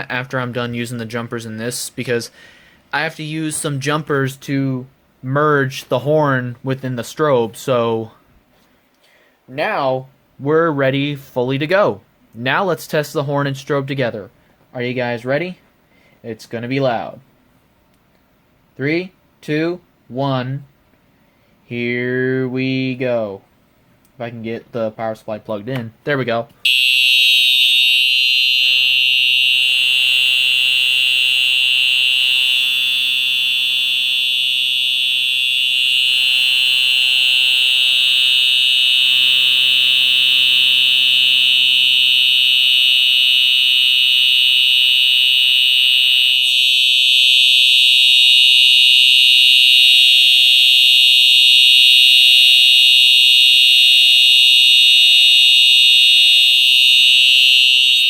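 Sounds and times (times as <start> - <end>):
high-pitched electronic alarm tone: 26.7 - 58.0.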